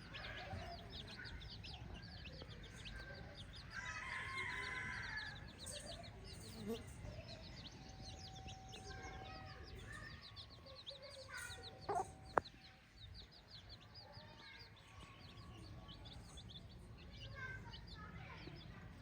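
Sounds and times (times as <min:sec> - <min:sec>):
chickens clucking: 0:11.2 - 0:12.6.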